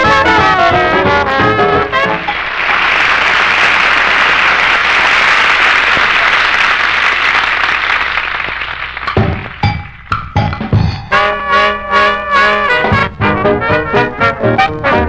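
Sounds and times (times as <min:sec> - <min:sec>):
brass band playing: 0:00.0 - 0:03.9, 0:10.7 - 0:15.0
audience applauding: 0:01.6 - 0:10.1.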